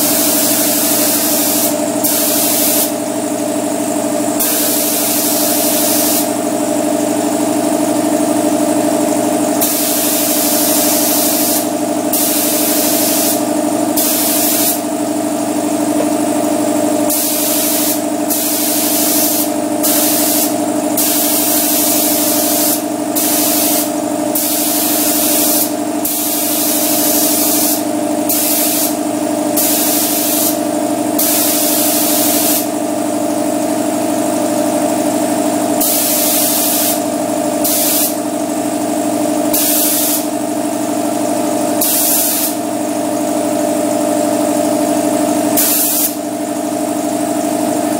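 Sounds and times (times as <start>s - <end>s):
spray gun hissing: 0.0s - 3.0s, 4.4s - 6.3s, 9.6s - 14.8s, 17.1s - 30.6s, 31.2s - 32.7s, 35.8s - 37.0s, 37.6s - 38.3s, 39.5s - 40.3s, 41.8s - 42.6s, 45.6s - 46.2s
steady mechanical hum: 0.0s - 47.9s.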